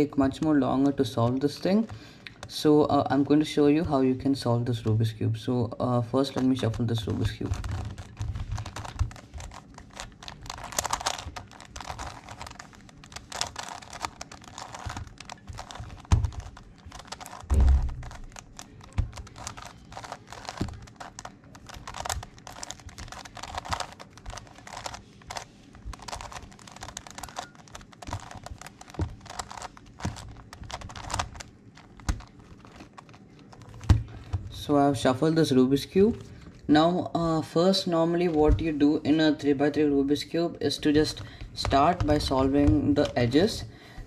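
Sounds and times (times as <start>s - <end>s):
plastic puzzle faces clicking: 6.4s - 33.9s, 40.9s - 43.2s
heavier knock: 17.5s - 18.1s.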